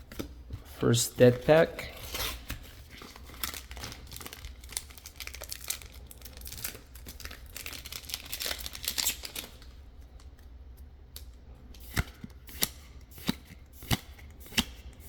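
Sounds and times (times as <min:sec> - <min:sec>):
foil wrapper crinkle: 0:01.9 - 0:09.8.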